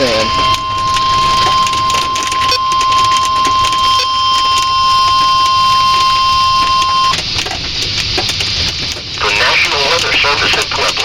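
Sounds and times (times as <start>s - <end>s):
steady high alarm beep: 0.0s - 7.2s
scattered clicks: 0.2s - 11.0s.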